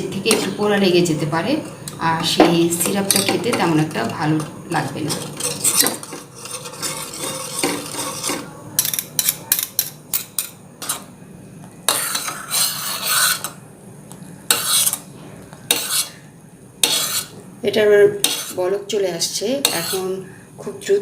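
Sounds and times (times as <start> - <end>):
utensil scraping a pan: 2.2 - 9.4, 10.2 - 11.1, 11.9 - 13.6, 14.5 - 15.1, 15.7 - 16.2, 16.8 - 17.4, 18.2 - 18.7, 19.6 - 20.2.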